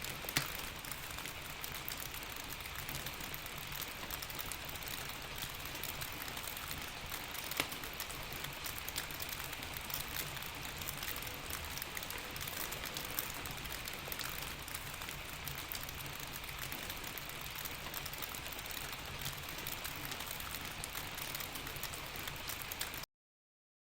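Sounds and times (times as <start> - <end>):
fireplace crackling and popping: 0.0 - 23.0
steady rain falling: 0.0 - 23.0.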